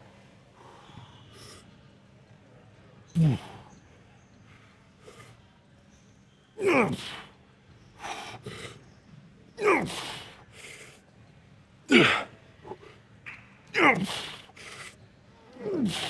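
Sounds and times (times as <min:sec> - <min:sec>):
man grunting with effort: 0:03.2 - 0:03.6, 0:06.6 - 0:07.2, 0:09.6 - 0:10.3, 0:11.9 - 0:12.3, 0:13.8 - 0:14.4, 0:15.6 - 0:16.0
man breathing hard: 0:13.8 - 0:15.0, 0:15.6 - 0:16.0.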